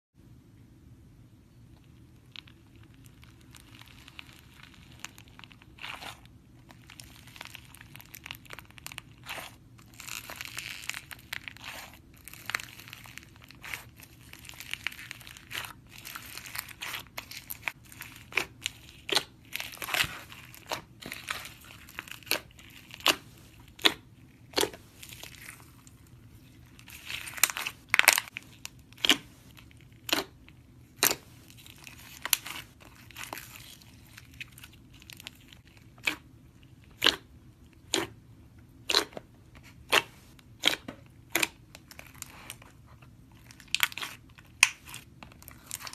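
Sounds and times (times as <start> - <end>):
slime squeezed by hand crackling: 2.3 - 38.2, 38.8 - 45.9.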